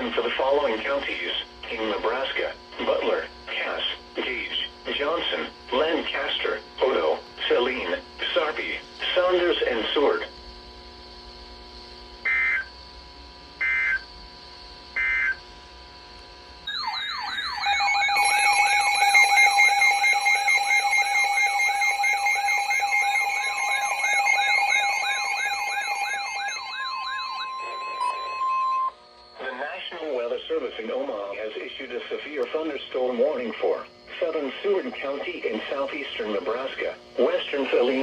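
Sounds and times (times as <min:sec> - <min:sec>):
warbling alert sirens: 0:12.2 - 0:12.7, 0:13.6 - 0:14.1, 0:15.0 - 0:15.4, 0:16.7 - 0:29.9
steady alert tone: 0:16.7 - 0:28.9
electronic data screeches: 0:16.7 - 0:31.3.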